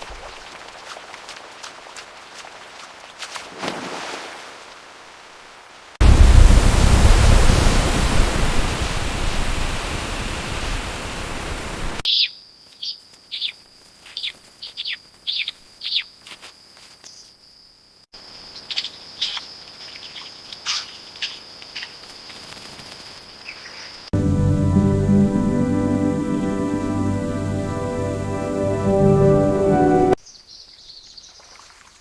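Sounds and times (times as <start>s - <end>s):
loud rushing noise: 6.0s - 12.0s
bird chirping: 12.0s - 16.2s, 30.2s - 31.5s.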